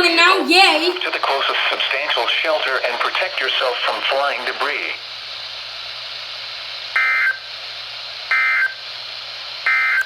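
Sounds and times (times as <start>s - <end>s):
radio static hiss: 0.0s - 5.4s.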